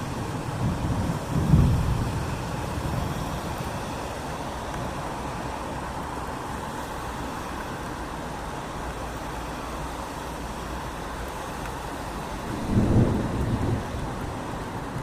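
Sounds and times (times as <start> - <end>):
low thunder rumble: 0.0 - 3.7, 12.4 - 15.0
rain on a street: 0.0 - 15.0.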